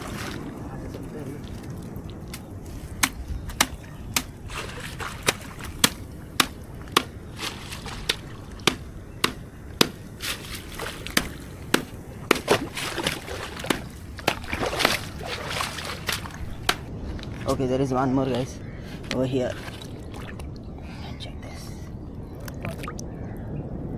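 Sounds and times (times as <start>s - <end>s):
wading through shallow water: 0.0s - 17.7s, 18.6s - 20.9s
sharp knocks: 5.2s - 10.4s, 11.0s - 12.7s, 13.6s - 15.1s.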